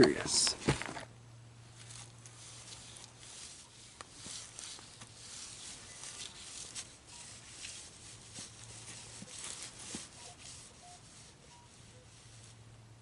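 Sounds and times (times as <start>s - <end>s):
search coil brushing ground cover: 0.0s - 13.0s
rustling in brush: 1.6s - 13.0s
footsteps: 1.8s - 10.8s
faint metal detector beeps: 5.6s - 7.8s, 9.2s - 12.5s.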